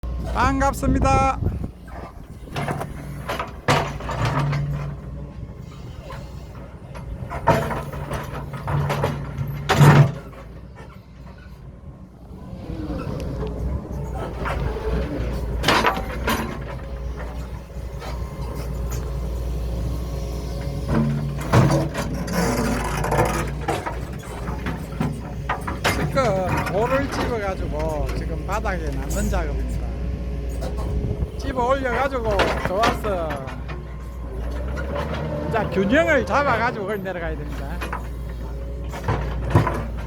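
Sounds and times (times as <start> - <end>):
excavator engine running: 0.0 - 40.0
boulders knocking: 31.3 - 33.9.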